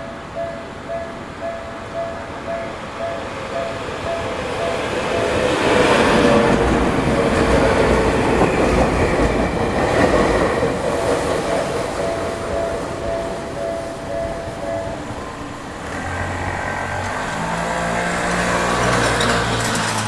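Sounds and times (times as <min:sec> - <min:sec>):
train passing rumble: 0:00.0 - 0:20.0.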